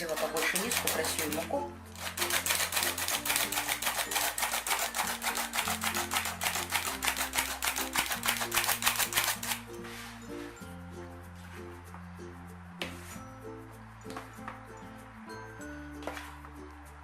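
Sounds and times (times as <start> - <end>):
flour sifter clicking: 0.0 - 9.6.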